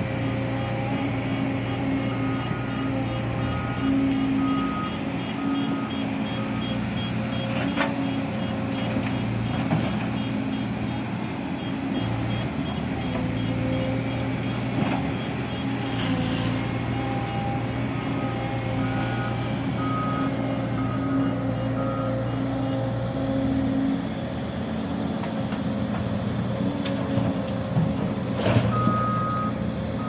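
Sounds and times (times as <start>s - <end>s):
diesel engine running: 0.1s - 30.0s
reversing alarm beeping: 1.9s - 22.8s, 28.6s - 30.0s.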